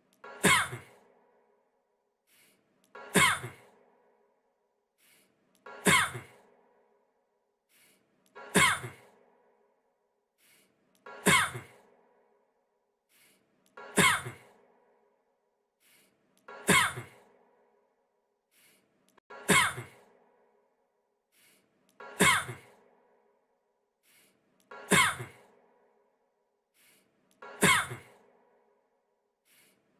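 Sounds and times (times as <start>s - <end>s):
man coughing: 0.4s - 1.0s, 3.1s - 3.7s, 5.8s - 6.4s, 8.5s - 9.1s, 11.2s - 11.8s, 13.9s - 14.5s, 16.6s - 17.2s, 19.4s - 20.0s, 22.2s - 22.8s, 24.9s - 25.4s, 27.6s - 28.1s.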